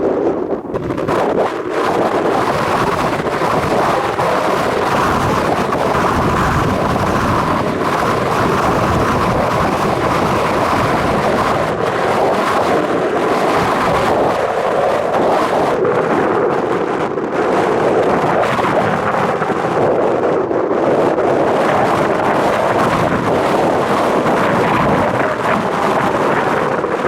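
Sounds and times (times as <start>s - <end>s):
strong wind buffeting microphone: 0.0s - 27.0s.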